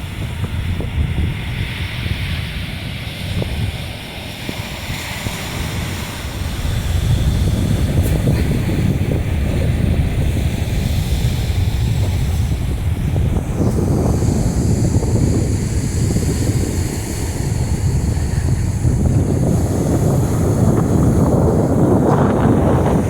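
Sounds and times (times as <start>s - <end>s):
sea surf washing ashore: 0.0s - 23.0s
wind buffeting microphone: 0.0s - 23.0s.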